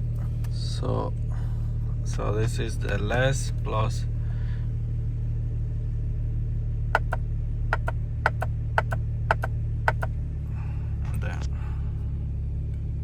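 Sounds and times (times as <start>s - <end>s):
car engine idling: 0.0s - 13.0s
shift paddle clicks: 7.0s - 7.2s, 7.8s - 10.1s.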